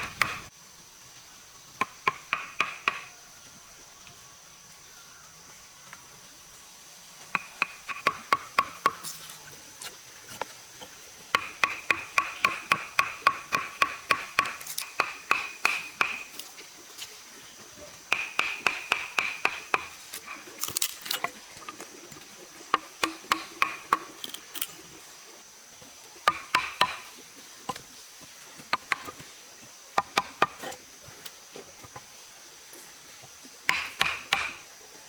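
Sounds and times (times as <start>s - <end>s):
sharp knocks and taps: 1.8s - 3.1s, 33.7s - 34.6s.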